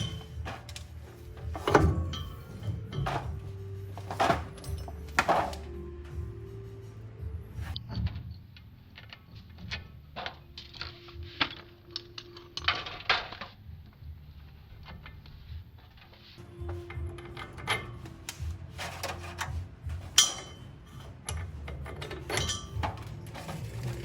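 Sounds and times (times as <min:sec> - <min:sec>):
metal tools clinking: 0:00.0 - 0:05.8, 0:16.7 - 0:24.0
low steady hum: 0:00.0 - 0:15.8.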